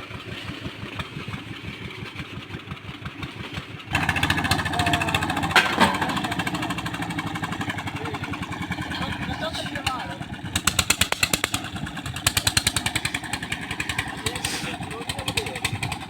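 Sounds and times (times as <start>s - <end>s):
boring machine engine pulsing: 3.9s - 16.0s.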